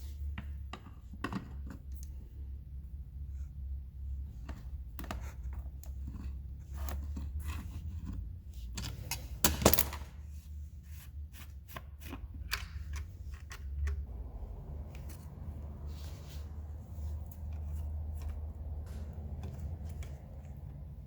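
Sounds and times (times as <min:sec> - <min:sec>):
steady low hum: 0:13.8 - 0:21.0.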